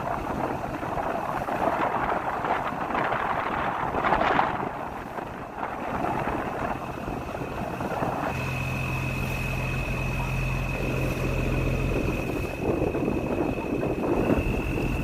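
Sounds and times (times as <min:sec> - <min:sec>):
high whine: 0:00.0 - 0:15.0
motor humming: 0:04.0 - 0:15.0.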